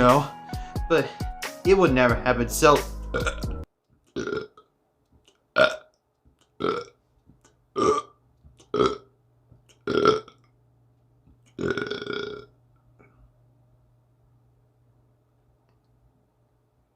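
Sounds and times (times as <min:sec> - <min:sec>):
person burping: 0:03.1 - 0:04.6, 0:05.6 - 0:05.9, 0:06.6 - 0:07.0, 0:07.8 - 0:09.1, 0:09.8 - 0:10.4, 0:11.6 - 0:12.5.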